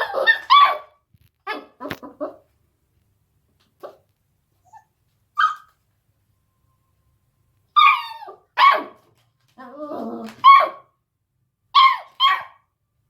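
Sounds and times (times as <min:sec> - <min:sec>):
puppy barking: 0:00.0 - 0:02.4, 0:05.4 - 0:05.7, 0:07.8 - 0:09.1, 0:10.3 - 0:10.9, 0:11.7 - 0:12.6.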